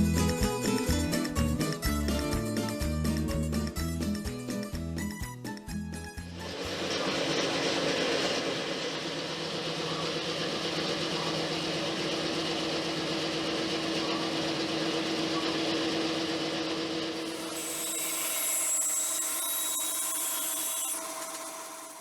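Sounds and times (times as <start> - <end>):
bandsaw motor humming: 6.2 - 22.0.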